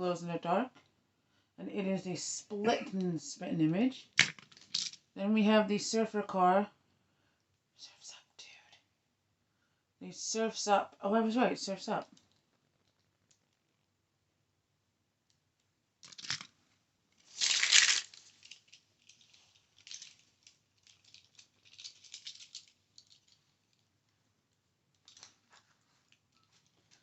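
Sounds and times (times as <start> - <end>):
toy cars rattling: 4.2 - 5.0, 16.0 - 16.5, 17.2 - 23.8.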